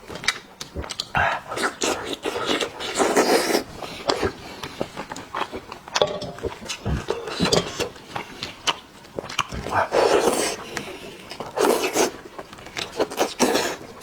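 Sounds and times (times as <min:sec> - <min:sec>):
wet chewing and smacking: 0:00.0 - 0:14.0
noisy slurps: 0:00.6 - 0:14.0.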